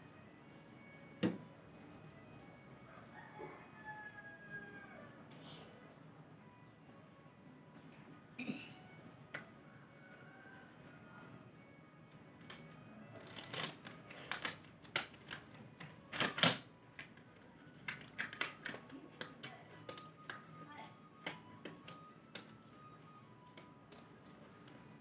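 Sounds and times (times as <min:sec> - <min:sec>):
faint background music: 0:00.0 - 0:25.0
clicks and rustles of gloves: 0:10.5 - 0:25.0.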